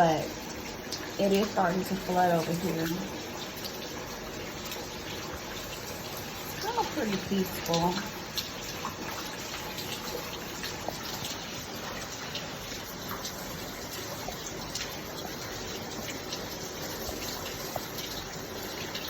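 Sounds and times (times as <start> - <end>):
drips and splashes: 0.0 - 19.0
heavy rain: 5.3 - 10.7.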